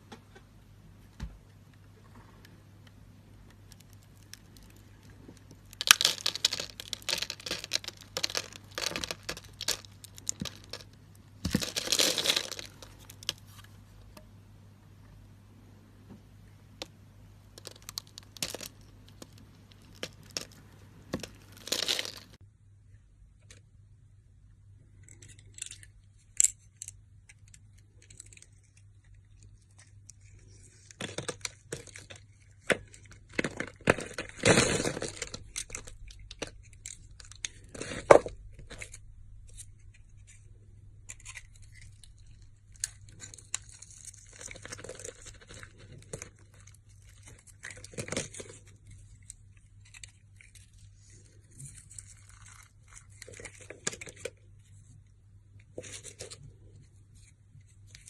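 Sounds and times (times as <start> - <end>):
low electrical hum: 0.0 - 58.0
tearing and crinkling: 3.7 - 13.7, 17.6 - 22.4, 29.4 - 40.5, 41.1 - 54.4.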